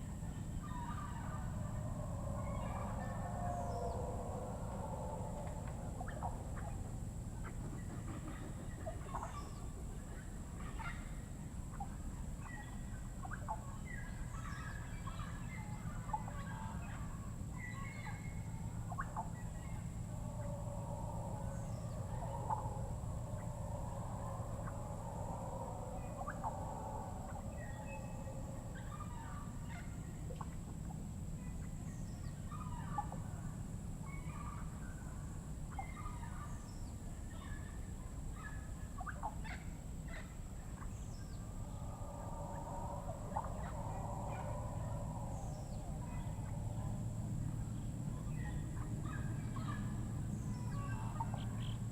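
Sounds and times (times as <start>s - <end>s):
steady high whine: 0.0s - 39.0s, 39.6s - 51.9s
bird calls and chirps: 0.0s - 51.9s
lower overlapping animal calls: 0.0s - 51.9s.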